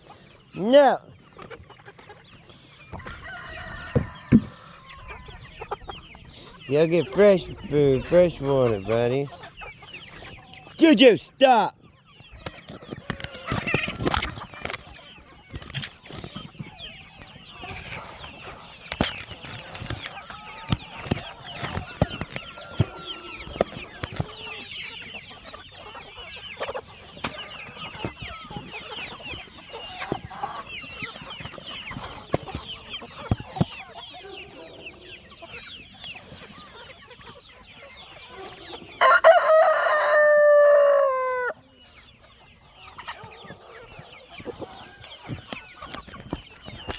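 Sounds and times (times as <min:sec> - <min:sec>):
chickens clucking: 0:00.0 - 0:46.9
rooster crowing: 0:03.0 - 0:05.0, 0:39.0 - 0:41.6.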